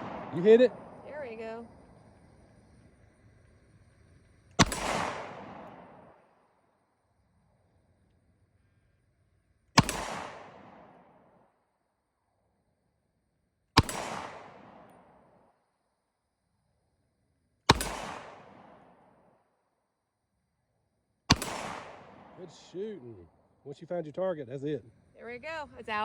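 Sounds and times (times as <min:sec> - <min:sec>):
pistol shots with reverberation: 0:00.0 - 0:01.0, 0:04.6 - 0:06.3, 0:09.8 - 0:11.4, 0:13.8 - 0:15.2, 0:17.7 - 0:19.2, 0:21.3 - 0:22.8.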